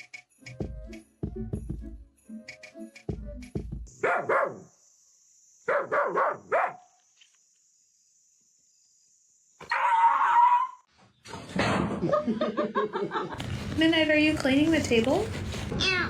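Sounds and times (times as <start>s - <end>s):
dog barking: 4.0s - 4.7s, 5.7s - 6.9s.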